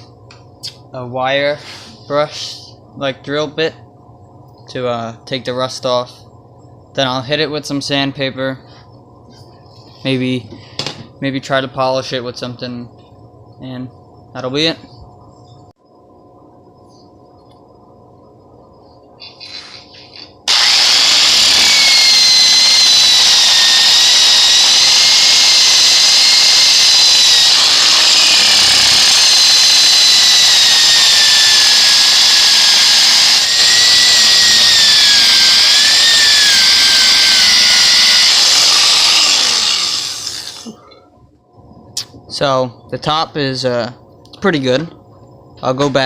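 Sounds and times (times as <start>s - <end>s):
drill wire brush on steel: 19.3s - 40.7s.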